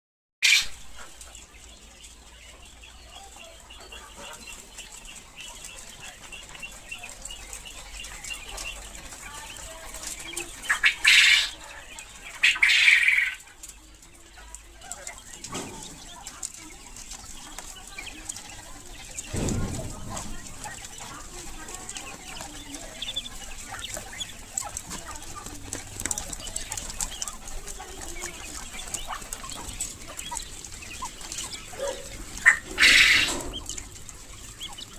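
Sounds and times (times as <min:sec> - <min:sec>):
quail chirping: 0:00.4 - 0:34.9
wings flapping: 0:14.5 - 0:34.9.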